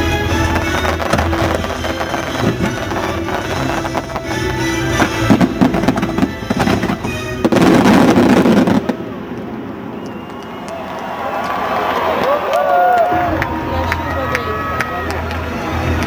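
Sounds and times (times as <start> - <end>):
loud music over sound system: 0.0 - 6.9
fireworks bangs and crackle: 0.0 - 11.7.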